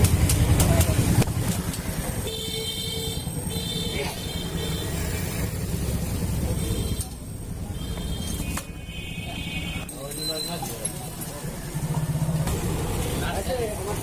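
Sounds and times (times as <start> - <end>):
low engine rumble: 10.7 - 14.0.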